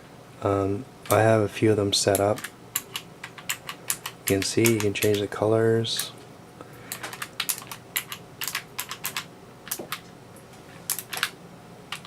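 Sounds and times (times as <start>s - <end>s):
mechanical keyboard clicks: 2.1s - 5.2s, 6.9s - 10.0s, 10.9s - 11.3s.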